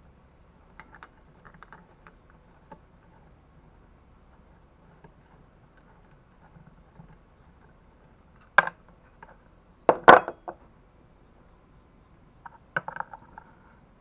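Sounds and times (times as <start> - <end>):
hand tools and metal parts clattering: 9.9 - 10.6.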